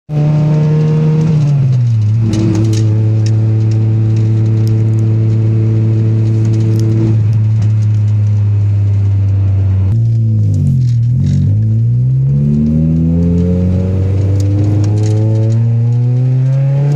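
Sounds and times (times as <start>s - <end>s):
car engine idling: 1.8s - 12.5s.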